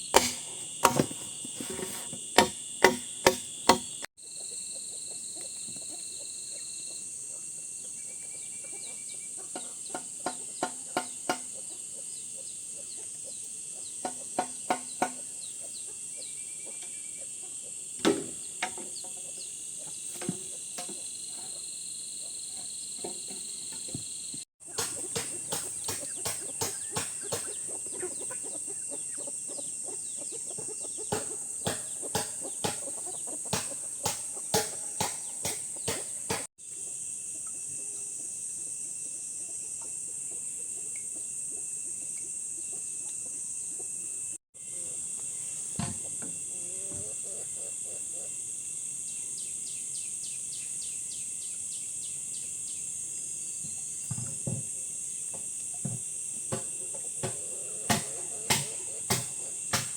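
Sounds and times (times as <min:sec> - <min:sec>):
insects chirring: 0:00.0 - 0:59.9
short sharp knocks: 0:00.2 - 0:04.1.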